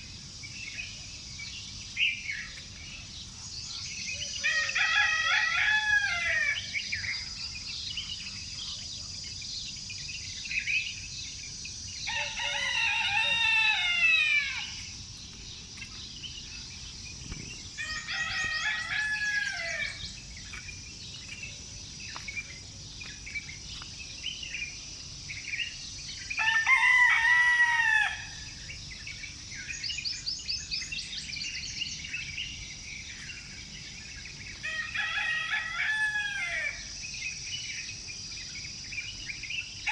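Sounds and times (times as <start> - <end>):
small birds chirping: 0.0 - 26.5, 28.4 - 39.9
rooster crowing: 4.4 - 6.7, 12.1 - 14.8, 17.7 - 20.1, 26.4 - 28.5, 34.6 - 36.9.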